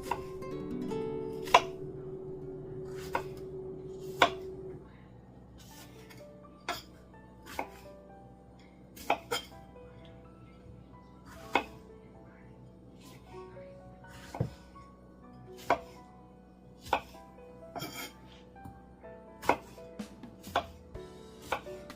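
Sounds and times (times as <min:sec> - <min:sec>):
acoustic guitar music: 0:00.0 - 0:04.8.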